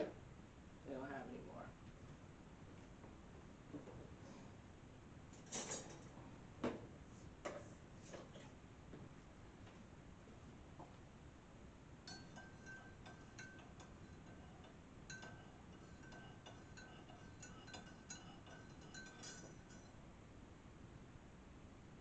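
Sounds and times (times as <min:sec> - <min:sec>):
spoon clinking in mug: 0:12.1 - 0:20.0.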